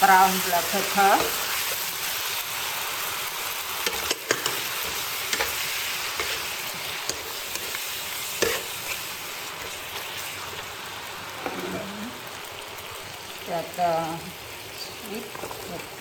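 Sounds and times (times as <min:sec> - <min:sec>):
meat sizzling in hot oil: 0:00.0 - 0:16.0
spatula clacking against pan: 0:03.8 - 0:05.6, 0:08.4 - 0:08.7.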